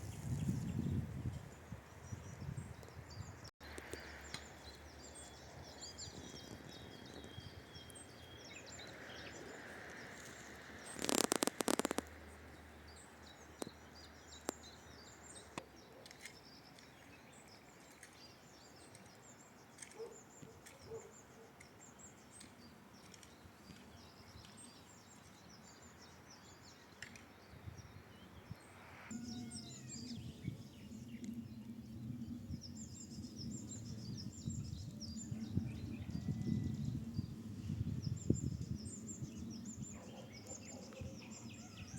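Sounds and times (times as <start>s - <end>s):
songbirds chirping: 0.0s - 41.9s
loud crackling burst: 10.8s - 12.1s.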